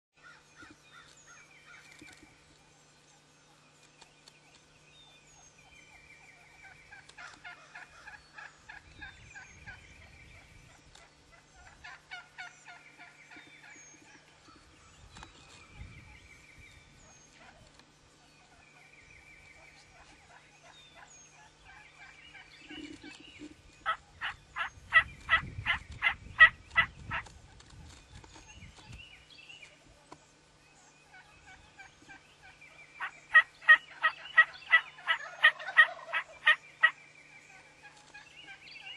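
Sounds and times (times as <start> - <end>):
turkeys gobbling: 6.6 - 9.1, 11.0 - 14.3, 21.7 - 27.3, 31.1 - 37.0.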